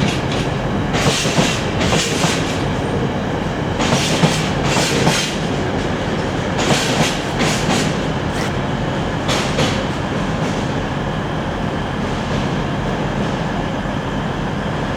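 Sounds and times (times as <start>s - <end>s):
train wheels rumbling on rails: 0.0s - 14.9s
wheel screech and hiss: 6.3s - 8.6s.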